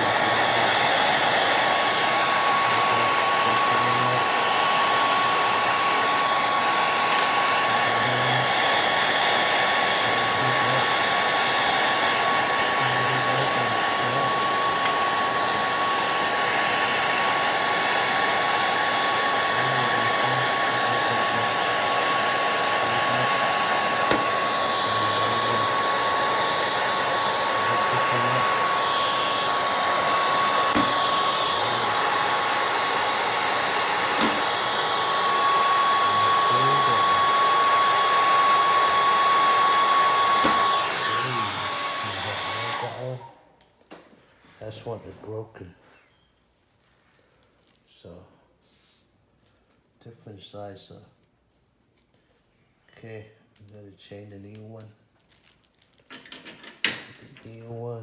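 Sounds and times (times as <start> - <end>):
electric blower running: 0.0 - 43.4.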